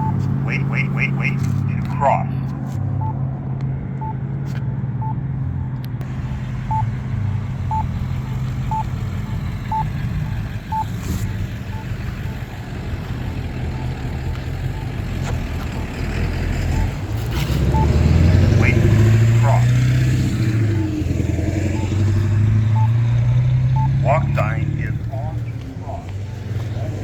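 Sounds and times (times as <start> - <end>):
low-pitched locator beep: 0.0 - 1.4, 3.0 - 3.2, 6.7 - 6.9, 7.7 - 17.0, 17.7 - 26.0
vehicle engines rumbling: 0.0 - 27.0.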